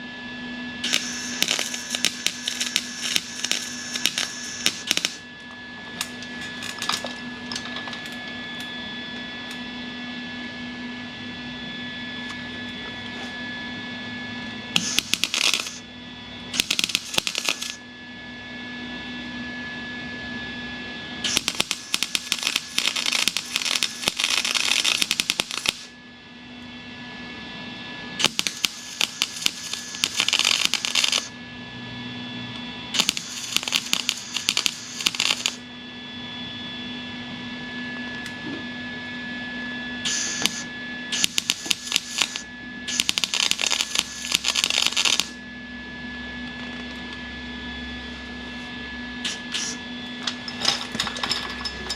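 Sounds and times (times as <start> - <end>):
steady hum: 0.0 - 51.9
welder crackling: 0.8 - 5.2, 14.8 - 15.8, 16.5 - 17.8, 21.2 - 25.9, 28.2 - 31.3, 33.0 - 35.6, 40.1 - 45.4, 49.3 - 51.1.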